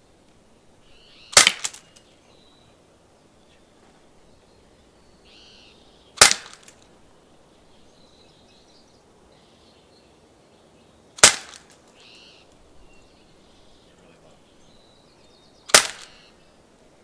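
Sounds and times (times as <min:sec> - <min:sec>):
gunshots with echo: 0:15.7 - 0:16.2.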